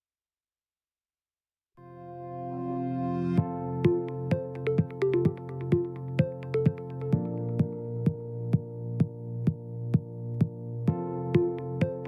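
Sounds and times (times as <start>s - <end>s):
synthesizer melody: 1.8s - 8.8s, 10.9s - 12.0s
drum machine beat: 3.9s - 10.1s, 11.4s - 12.0s.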